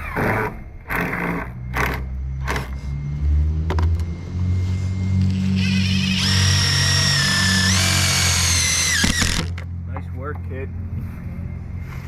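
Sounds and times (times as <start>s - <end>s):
power drill driving a screw: 5.2s - 9.6s.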